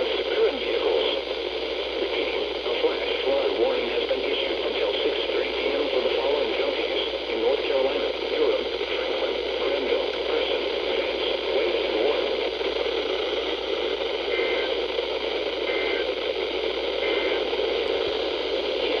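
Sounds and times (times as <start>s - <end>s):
radio static hiss: 0.0s - 19.0s
two-tone data bursts: 13.8s - 16.2s, 16.9s - 19.0s.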